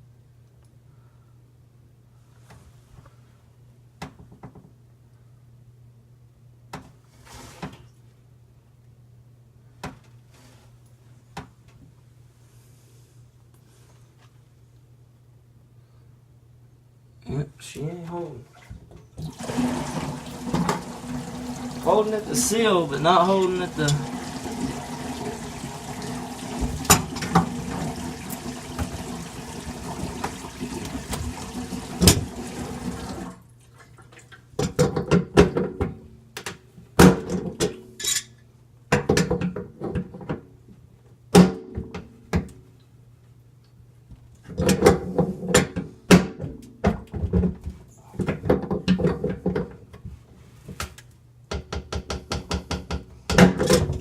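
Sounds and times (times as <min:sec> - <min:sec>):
water running into a sink: 0:18.6 - 0:34.3.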